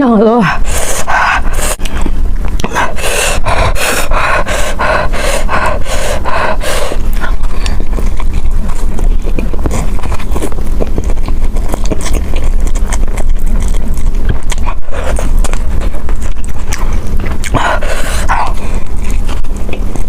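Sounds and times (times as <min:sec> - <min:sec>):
wet chewing and mouth clicks: 0:00.5 - 0:20.0.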